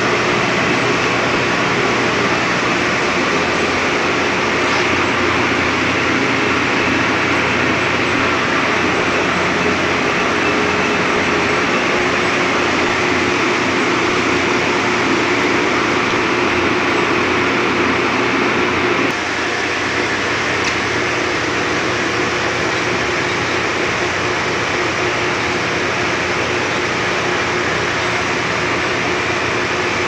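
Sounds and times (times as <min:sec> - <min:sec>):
machinery rushing drone: 0:00.0 - 0:30.0.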